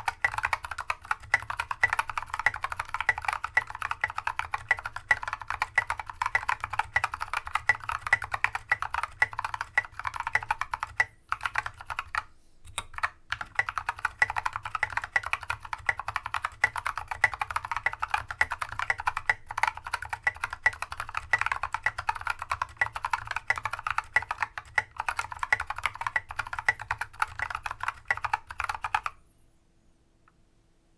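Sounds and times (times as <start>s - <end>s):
fast typing on mechanical keyboard: 0.0s - 29.2s.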